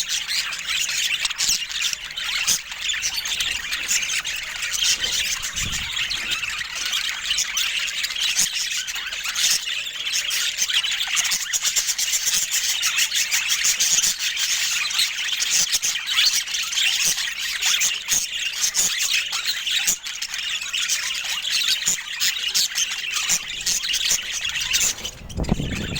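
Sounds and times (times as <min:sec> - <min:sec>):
budgerigars chattering: 0:01.1 - 0:07.6.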